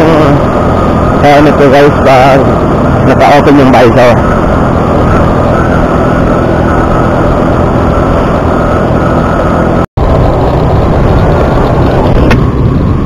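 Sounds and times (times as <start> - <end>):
wind buffeting microphone: 0.0 - 13.0
motorcycle engine: 4.0 - 13.0.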